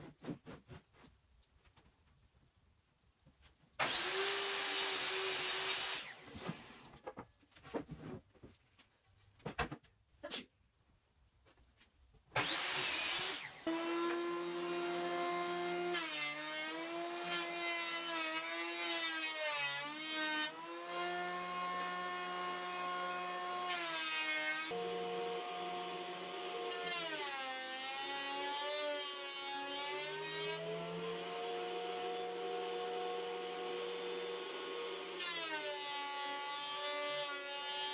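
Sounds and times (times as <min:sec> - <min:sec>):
electric power tool motor: 0:03.8 - 0:06.8, 0:12.4 - 0:15.6, 0:24.6 - 0:35.8.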